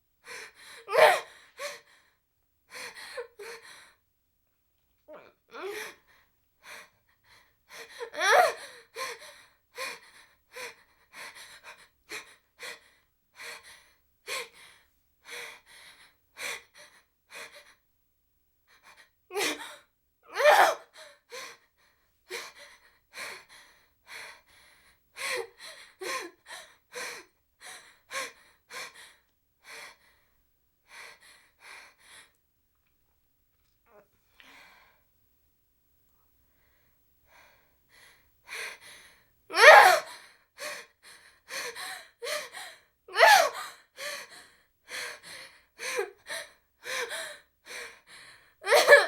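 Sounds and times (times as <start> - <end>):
woman breathing heavily: 20.9 - 32.3, 36.5 - 49.0.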